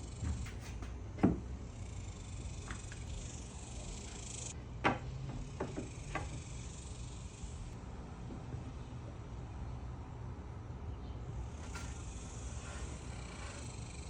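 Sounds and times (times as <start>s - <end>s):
steady low hum: 0.0s - 14.0s
high buzzing hiss: 1.6s - 4.6s.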